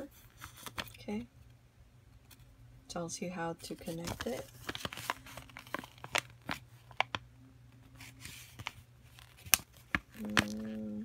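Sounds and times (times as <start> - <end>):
paper rustling: 3.7 - 7.2, 7.9 - 10.8.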